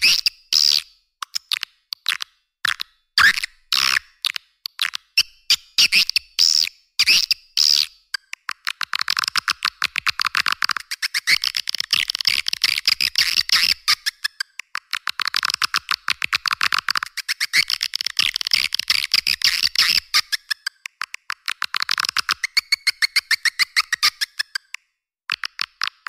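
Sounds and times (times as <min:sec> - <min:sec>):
recorded bird chirps: 0:16.5 - 0:24.9.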